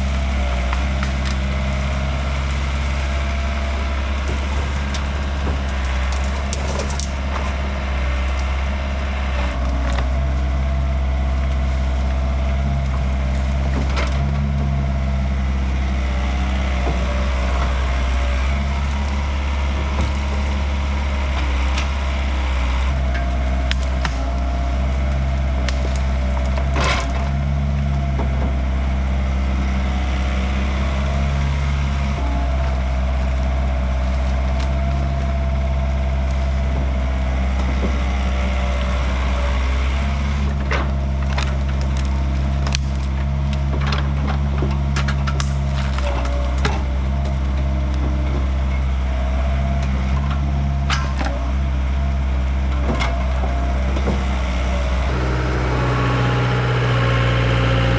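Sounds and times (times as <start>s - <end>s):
wood cracking and snapping: 0.0s - 28.7s, 29.4s - 48.7s
excavator diesel engine running: 0.0s - 57.9s.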